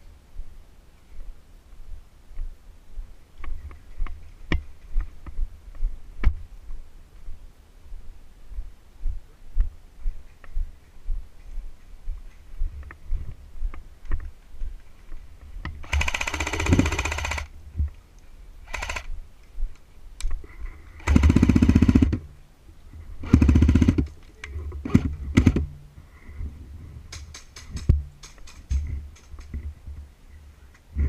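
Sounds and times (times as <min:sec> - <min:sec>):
airsoft gun firing bursts: 0:15.8 - 0:17.5, 0:18.7 - 0:19.1, 0:21.0 - 0:22.2, 0:23.2 - 0:24.1.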